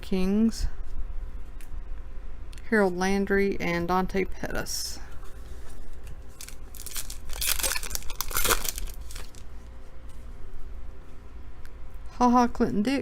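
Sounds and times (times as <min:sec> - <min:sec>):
foil wrapper tearing and crinkling: 0:06.3 - 0:09.5.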